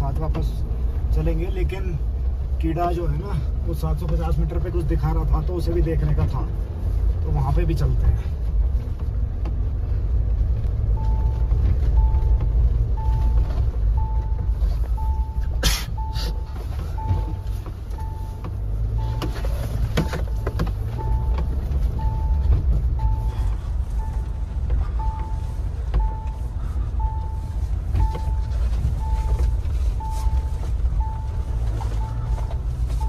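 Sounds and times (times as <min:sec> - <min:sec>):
engine and road rumble: 0:00.0 - 0:33.0
dashboard warning chime beeping: 0:10.8 - 0:33.0.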